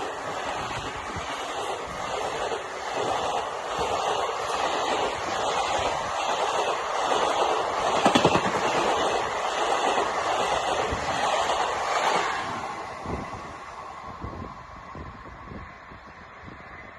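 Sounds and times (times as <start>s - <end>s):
express train roaring past: 0.0s - 16.9s
wheels thumping over rail joints: 7.8s - 9.3s.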